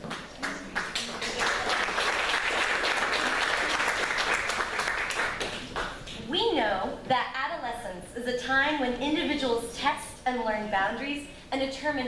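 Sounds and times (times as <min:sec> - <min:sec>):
audience applauding: 0:00.0 - 0:06.0.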